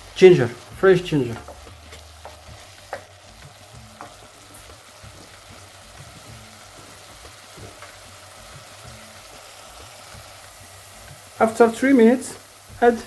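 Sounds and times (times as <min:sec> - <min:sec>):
vegetables sizzling in oil: 0:00.0 - 0:13.0.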